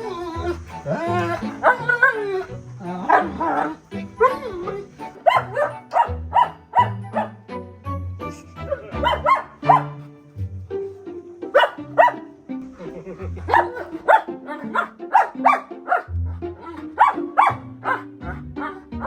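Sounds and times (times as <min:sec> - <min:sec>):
dog whining: 0:00.0 - 0:07.3
background music with bass: 0:00.0 - 0:19.0
dog barking: 0:00.4 - 0:07.4, 0:08.7 - 0:10.0, 0:11.5 - 0:12.3, 0:13.4 - 0:19.0.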